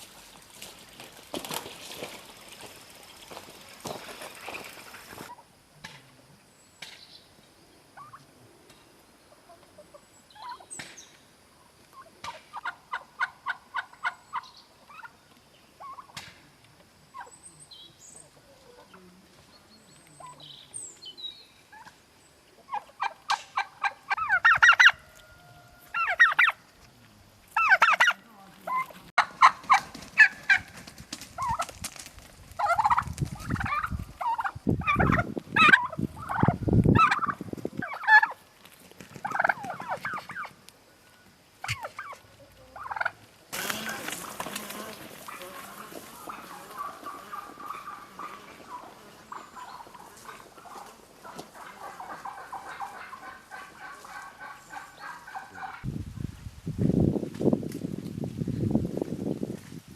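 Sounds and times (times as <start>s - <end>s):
turkey gobbling: 8.0s - 8.2s, 9.5s - 10.7s, 11.9s - 15.2s, 15.8s - 16.2s, 22.6s - 26.6s, 27.5s - 30.8s, 31.4s - 31.7s, 32.6s - 38.4s, 39.2s - 55.9s.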